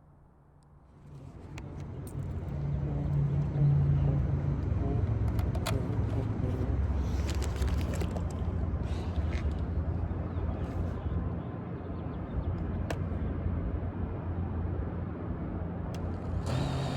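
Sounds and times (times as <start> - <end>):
drone motors and propellers: 15.8 - 16.9.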